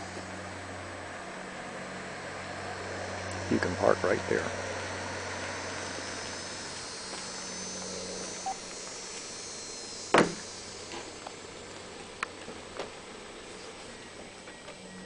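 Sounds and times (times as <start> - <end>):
vehicle engine humming: 0.0 - 15.0
sharp knock: 10.1 - 10.4.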